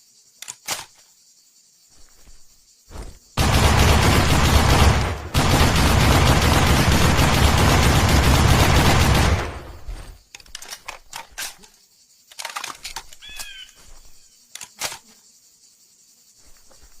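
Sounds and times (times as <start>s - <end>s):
machine gun burst: 3.4s - 10.1s
sharp clicks and light knocks: 10.2s - 13.5s.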